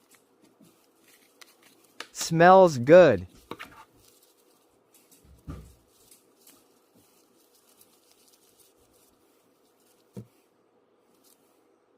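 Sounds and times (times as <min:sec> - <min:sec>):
thump: 0:05.4 - 0:05.8.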